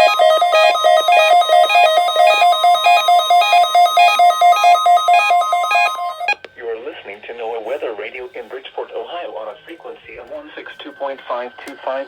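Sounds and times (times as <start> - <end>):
rapid two-pitch beeping: 0.0 - 6.4
steady alert tone: 0.0 - 6.4.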